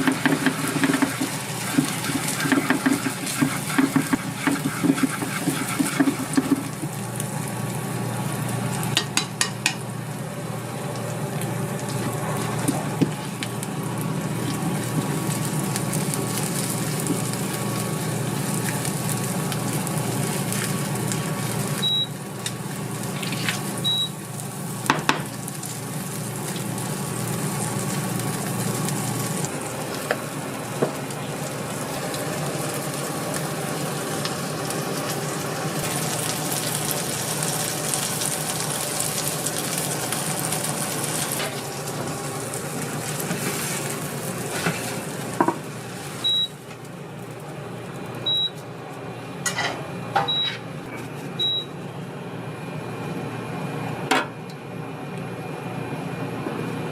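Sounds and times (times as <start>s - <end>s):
rice sizzling in a pan: 0.0s - 48.5s.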